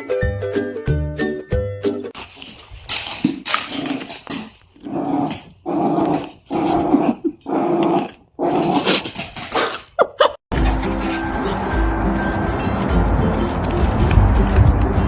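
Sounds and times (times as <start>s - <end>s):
pet growling: 4.8s - 9.1s.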